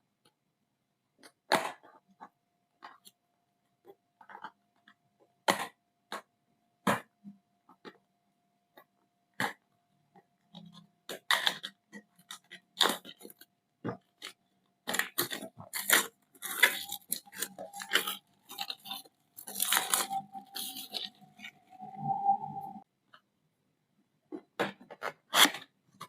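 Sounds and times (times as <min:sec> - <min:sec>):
packaging clicks and rustles: 0:10.5 - 0:21.6
packaging crinkling: 0:14.2 - 0:21.8.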